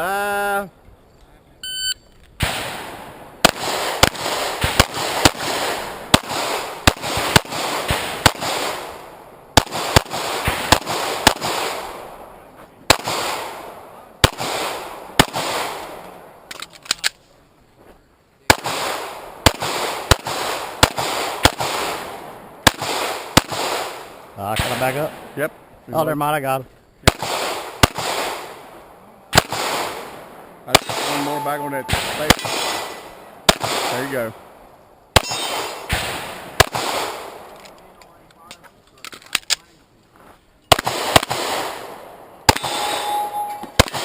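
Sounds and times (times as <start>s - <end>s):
pistol shots with echo: 2.4s - 12.3s, 12.9s - 16.3s, 18.5s - 25.4s, 27.0s - 37.5s, 40.7s - 44.0s.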